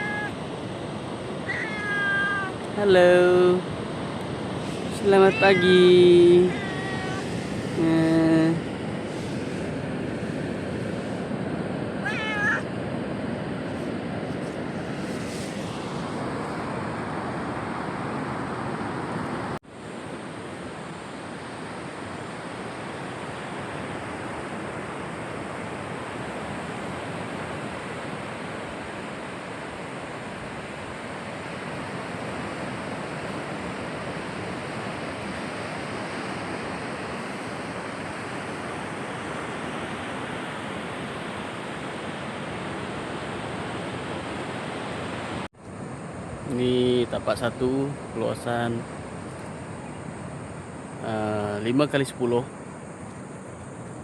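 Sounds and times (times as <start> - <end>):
cat meowing: 0.0 - 0.4, 1.4 - 2.6, 4.8 - 7.8, 12.0 - 12.7
sea waves breaking on shore: 0.0 - 54.0.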